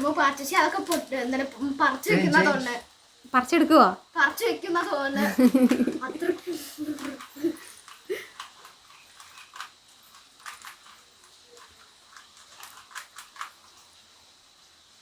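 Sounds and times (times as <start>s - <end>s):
puzzle cube clicking as twisted: 6.9s - 13.7s.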